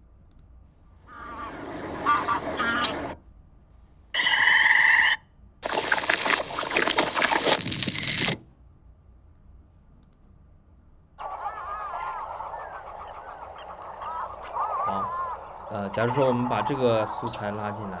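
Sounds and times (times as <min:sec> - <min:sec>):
faint outdoor background: 0:00.0 - 0:18.0
geese honking: 0:01.1 - 0:03.2, 0:11.2 - 0:18.0
splashing water: 0:05.6 - 0:08.4.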